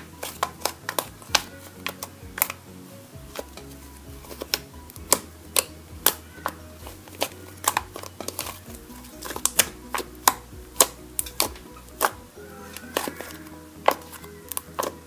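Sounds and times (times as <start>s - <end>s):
background music with low notes: 0.0s - 15.0s.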